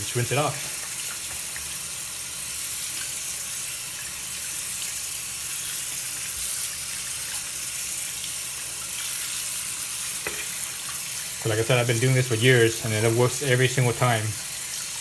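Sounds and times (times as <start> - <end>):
tap water running: 0.0 - 15.0.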